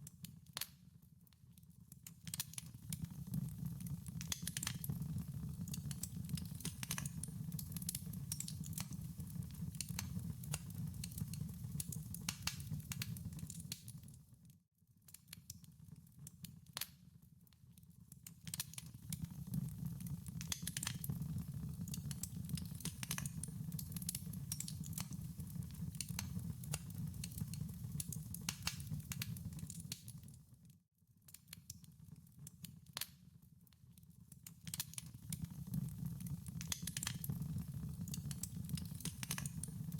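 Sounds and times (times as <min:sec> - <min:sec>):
wood fire crackling: 0:02.2 - 0:14.1, 0:18.4 - 0:30.3, 0:34.4 - 0:39.9.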